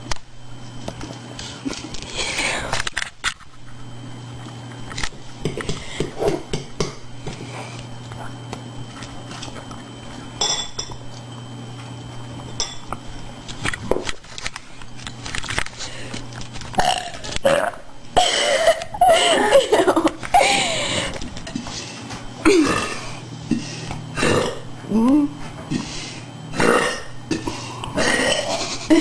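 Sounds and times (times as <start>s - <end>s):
woman belching: 16.8s - 18.9s, 22.4s - 23.1s, 24.2s - 25.3s, 26.5s - 29.0s.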